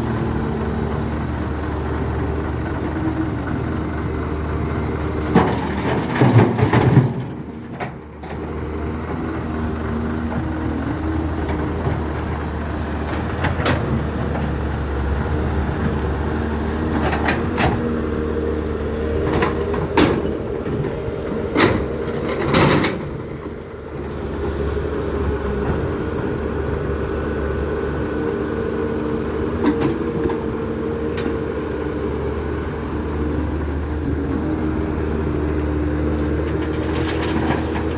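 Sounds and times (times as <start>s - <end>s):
diesel engine running: 0.0s - 37.9s
excavator digging knocks: 5.0s - 9.3s, 19.2s - 23.6s, 36.1s - 37.9s.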